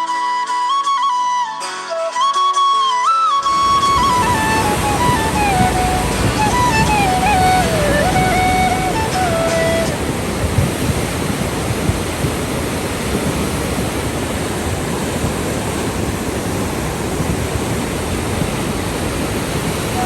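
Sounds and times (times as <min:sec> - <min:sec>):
river rushing: 0:03.4 - 0:20.0.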